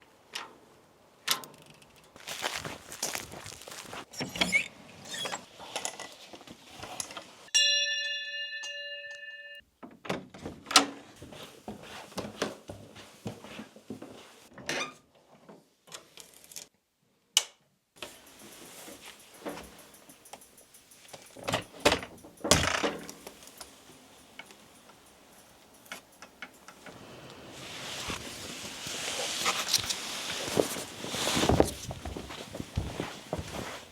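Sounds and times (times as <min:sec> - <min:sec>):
struck metal object ringing: 0:07.6 - 0:09.6.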